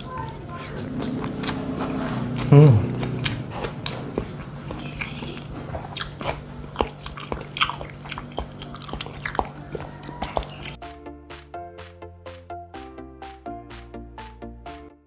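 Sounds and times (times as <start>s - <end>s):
person chewing with wet mouth clicks: 0.0s - 10.8s.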